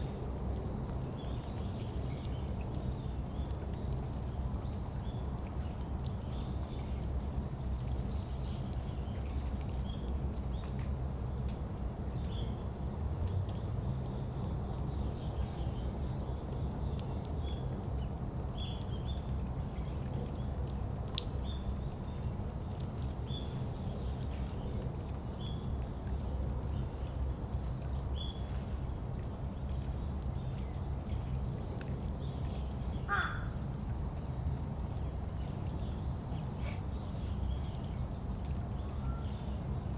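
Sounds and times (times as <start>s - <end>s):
insects trilling: 30.0s - 39.9s.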